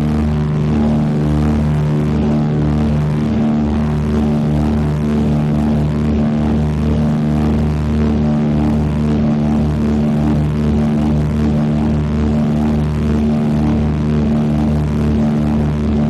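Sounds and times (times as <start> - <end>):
twin propeller engines droning: 0.0 - 16.0.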